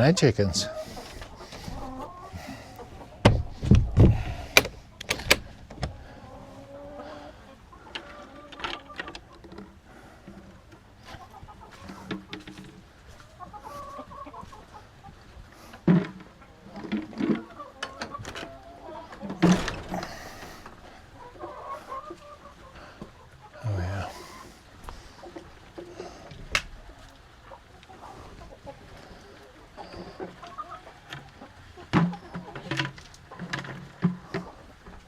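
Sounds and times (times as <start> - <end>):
chickens clucking: 0.0 - 35.0
sharp knocks and thumps: 3.2 - 6.0.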